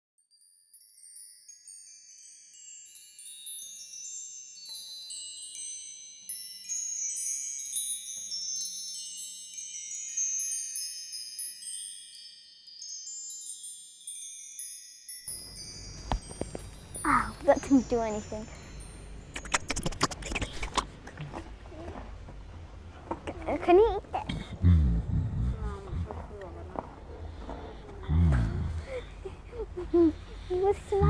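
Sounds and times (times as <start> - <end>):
wind chimes tinkling: 0.2 - 20.6.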